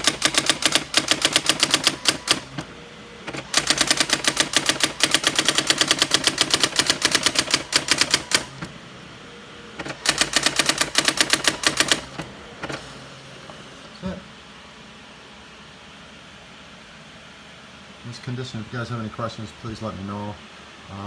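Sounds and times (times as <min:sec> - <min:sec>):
electronic typewriter printing: 0:00.0 - 0:08.8, 0:09.8 - 0:13.9.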